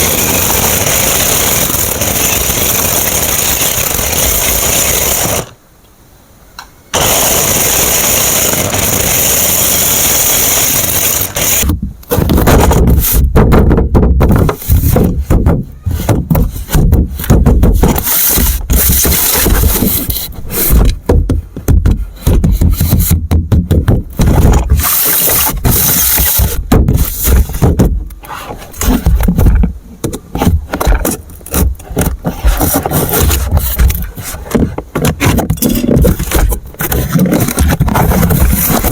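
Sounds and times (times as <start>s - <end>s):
toy car electric motor whine: 0.0s - 5.6s, 6.9s - 11.7s.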